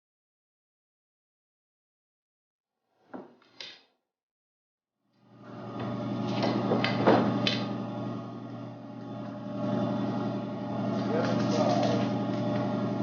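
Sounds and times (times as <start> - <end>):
power tool motor running: 5.2 - 13.0.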